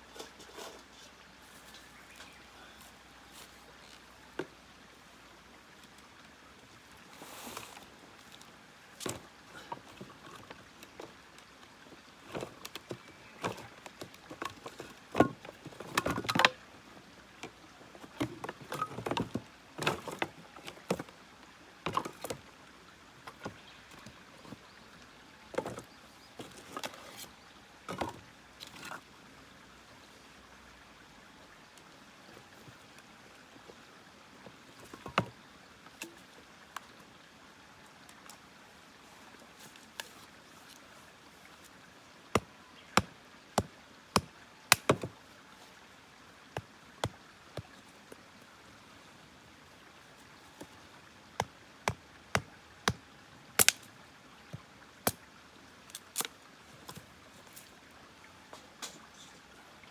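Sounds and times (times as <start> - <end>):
firewood being handled: 0.0 - 4.6, 7.0 - 16.7, 25.4 - 29.1, 39.0 - 45.8, 53.6 - 55.2.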